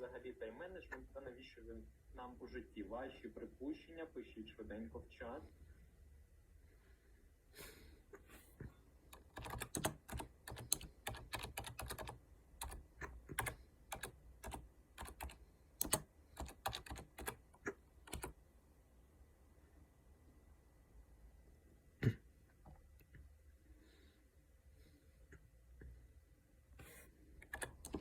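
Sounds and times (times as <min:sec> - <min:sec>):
computer keyboard typing: 0:09.1 - 0:18.4, 0:27.4 - 0:28.0.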